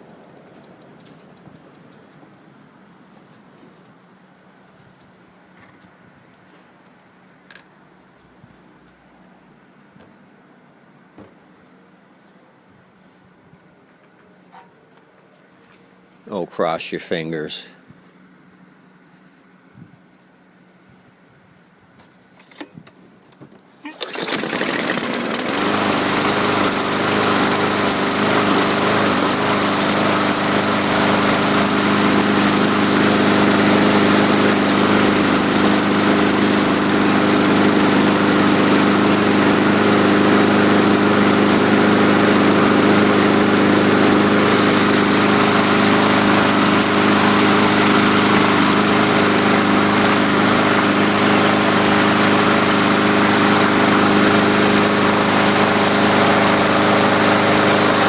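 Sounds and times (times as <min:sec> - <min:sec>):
push mower engine running: 0:22.4 - 0:58.0.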